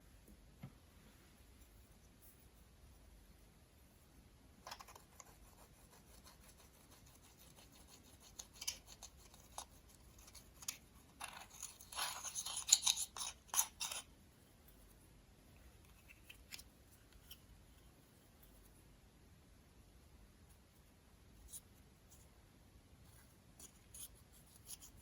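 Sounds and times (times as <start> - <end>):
crisp clicks and scratchy scrapes: 4.6 - 14.1.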